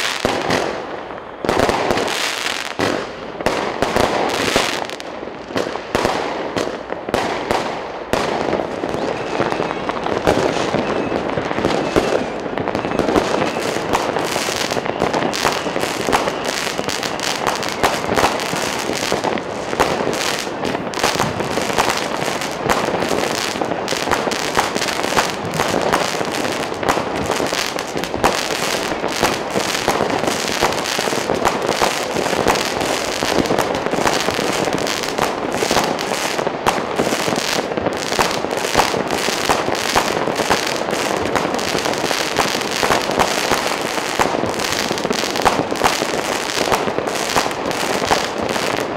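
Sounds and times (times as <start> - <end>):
fireworks and firecrackers bangs: 0.0 - 48.9.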